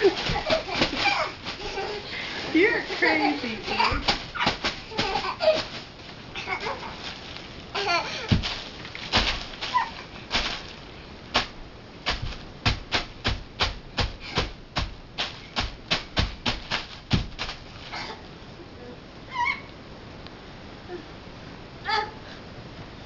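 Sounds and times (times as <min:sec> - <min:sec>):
bubble wrap popping: 0:00.0 - 0:18.1.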